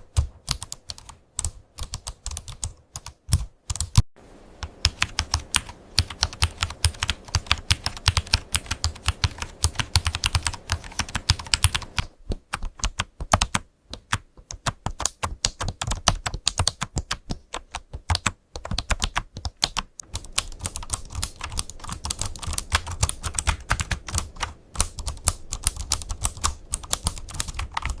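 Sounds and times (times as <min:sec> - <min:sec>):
rapid keyboard typing: 0:00.0 - 0:04.0, 0:04.6 - 0:28.0.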